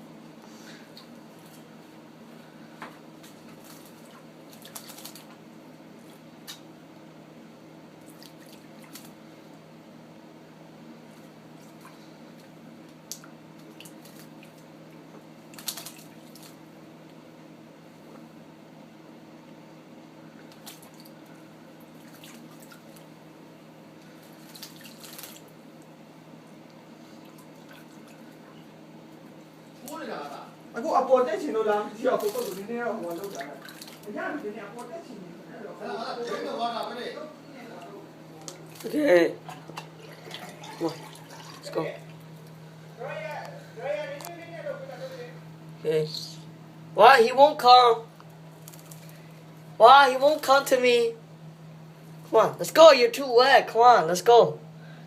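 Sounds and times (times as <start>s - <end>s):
steady low hum: 0.0s - 55.0s
water dripping and splashing: 3.2s - 5.3s, 8.0s - 9.2s, 11.6s - 16.6s, 20.5s - 21.2s, 21.8s - 23.1s, 24.2s - 25.9s, 26.7s - 28.4s, 32.1s - 34.2s, 38.4s - 42.6s
water running from a tap: 40.0s - 42.2s.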